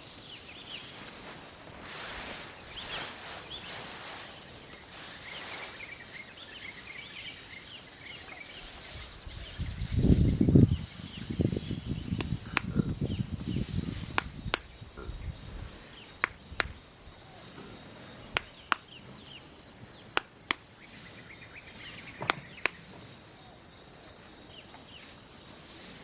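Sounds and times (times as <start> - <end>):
faint bird or insect chirps: 0.0 - 26.0
rice stalks snapping: 12.0 - 12.8, 13.8 - 14.8, 16.2 - 16.9, 18.3 - 18.9, 20.2 - 20.8, 22.2 - 22.9.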